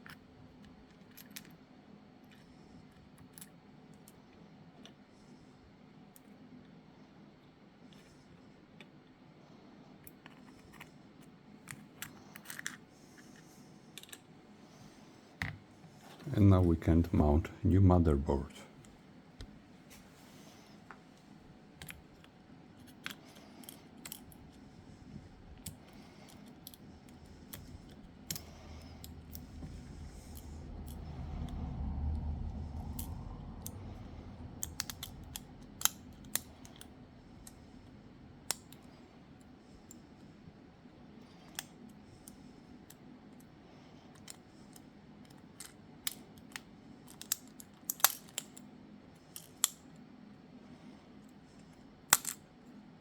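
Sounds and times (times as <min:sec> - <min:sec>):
low rumble: 0:26.9 - 0:39.5.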